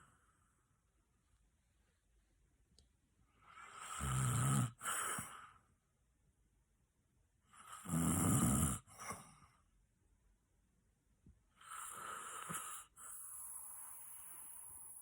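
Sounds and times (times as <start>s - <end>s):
person snoring loudly: 3.7s - 5.3s, 7.8s - 8.9s.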